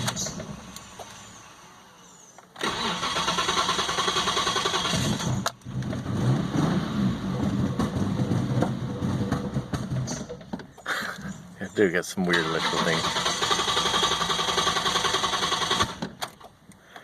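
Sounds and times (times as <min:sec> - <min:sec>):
engine running unevenly: 0:00.0 - 0:11.6
starter motor cranking: 0:02.4 - 0:05.7, 0:12.3 - 0:16.4.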